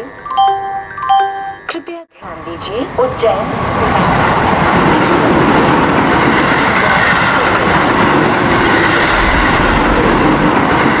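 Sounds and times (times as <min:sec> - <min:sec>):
train rumbling and rattling: 0:02.3 - 0:11.0
brief high-pitched sound: 0:08.4 - 0:10.6.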